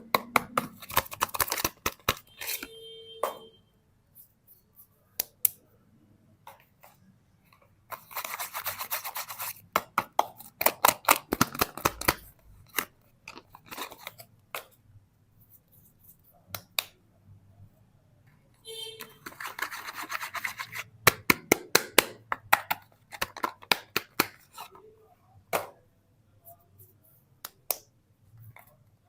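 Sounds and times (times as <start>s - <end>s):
packaging clicks and snaps: 0.2s - 2.5s, 10.4s - 14.7s.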